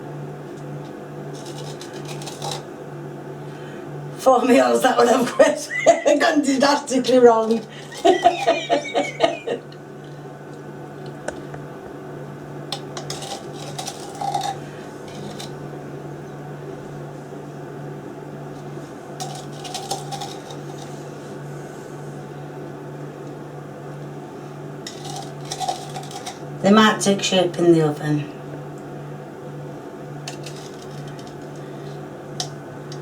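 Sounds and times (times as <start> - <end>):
steady low hum: 0.0 - 33.0
metal spoon scraping a bowl: 1.3 - 2.7, 13.0 - 15.6, 19.2 - 21.2, 24.9 - 26.4, 30.3 - 31.6.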